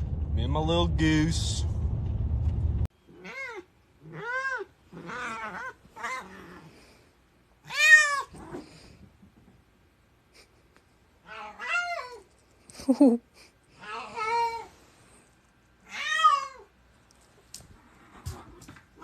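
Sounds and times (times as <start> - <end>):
cat meowing: 7.6 - 8.3, 15.8 - 16.7.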